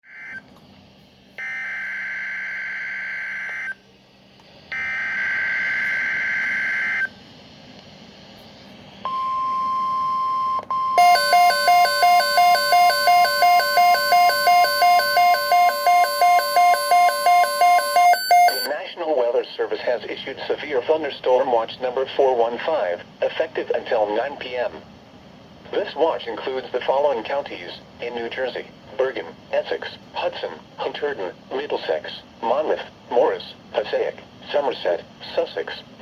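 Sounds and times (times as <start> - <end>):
steady warning alarm tone: 9.1 - 18.8
buzzy digital header tones: 11.0 - 18.7
pulsing alert beep: 11.0 - 18.7.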